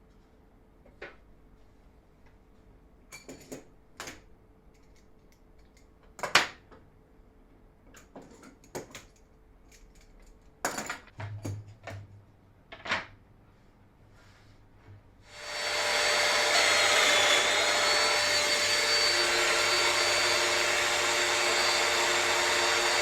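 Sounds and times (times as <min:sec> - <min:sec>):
tools clicking and knocking: 0:07.9 - 0:12.1.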